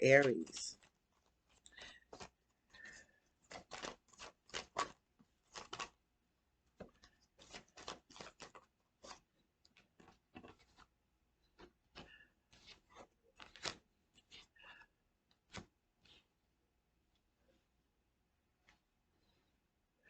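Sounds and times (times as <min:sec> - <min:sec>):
cards being shuffled: 0:00.1 - 0:06.0, 0:06.8 - 0:10.9, 0:11.5 - 0:14.6, 0:15.4 - 0:16.3.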